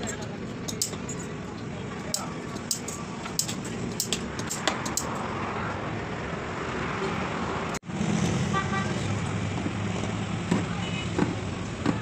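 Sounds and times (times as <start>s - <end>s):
street traffic noise: 0.0s - 12.0s.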